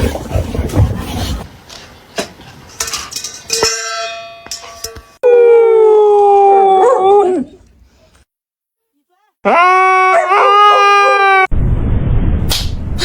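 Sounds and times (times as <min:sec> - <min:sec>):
metallic clinks and clangs: 0:02.7 - 0:05.2
dog howling: 0:05.2 - 0:07.6, 0:09.5 - 0:11.5.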